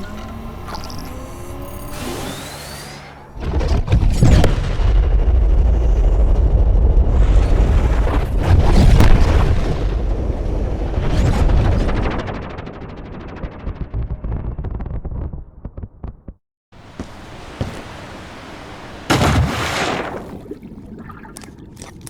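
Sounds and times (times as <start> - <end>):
low explosion rumble: 3.6 - 16.4.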